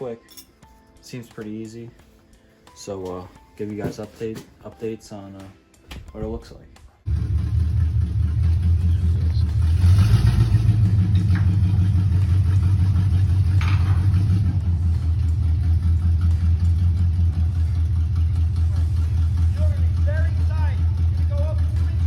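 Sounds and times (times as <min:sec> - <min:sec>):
engine idling: 0:07.1 - 0:22.0.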